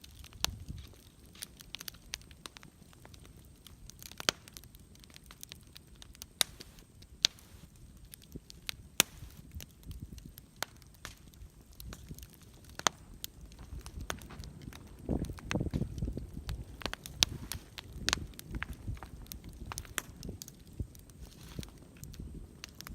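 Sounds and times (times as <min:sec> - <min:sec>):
campfire crackling: 0:00.0 - 0:22.9.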